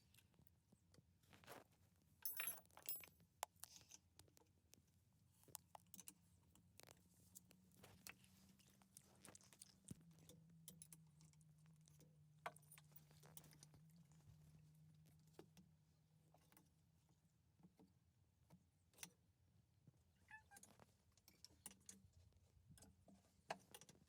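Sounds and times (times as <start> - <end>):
metal tools clinking: 2.2 - 3.2.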